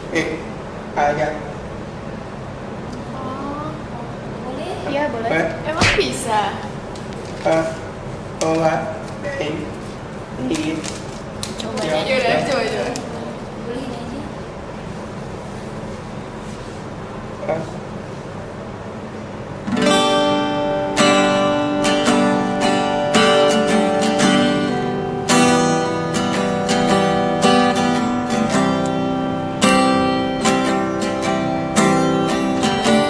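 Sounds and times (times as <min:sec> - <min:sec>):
acoustic guitar strumming chords: 0:19.7 - 0:33.0.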